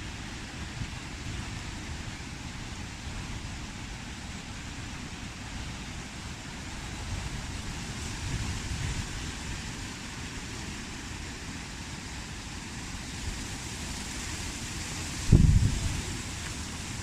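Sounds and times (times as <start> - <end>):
wind hissing: 0.0 - 17.0
wind buffeting microphone: 15.0 - 17.0.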